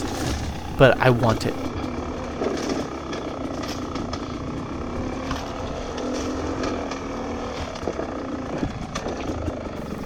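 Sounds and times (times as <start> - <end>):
two-stroke engine running: 0.0 - 10.0.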